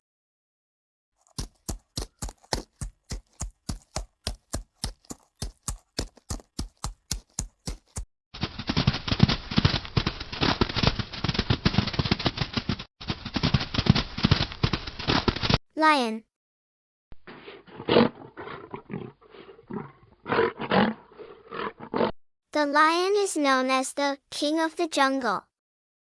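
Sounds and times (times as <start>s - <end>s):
camel knocking sounds: 1.2s - 8.0s.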